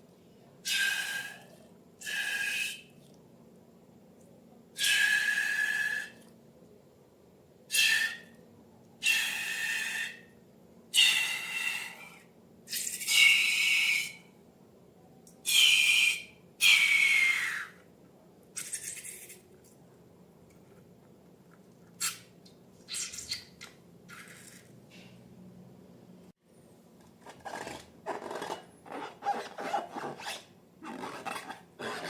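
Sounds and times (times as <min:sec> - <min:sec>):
air squealing out of balloon: 0:07.7 - 0:08.3.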